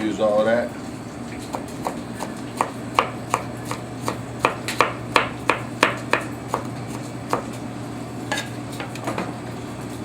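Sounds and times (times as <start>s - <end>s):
knife chopping on cutting board: 1.5s - 7.6s.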